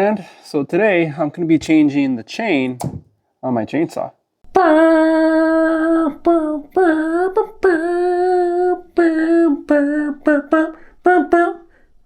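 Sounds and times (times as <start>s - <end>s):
person singing unaccompanied: 4.4s - 12.0s.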